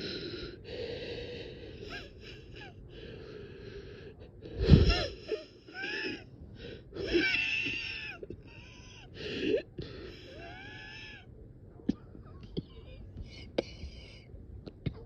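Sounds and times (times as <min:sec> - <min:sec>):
laboured wheezing breathing: 0:00.0 - 0:11.0.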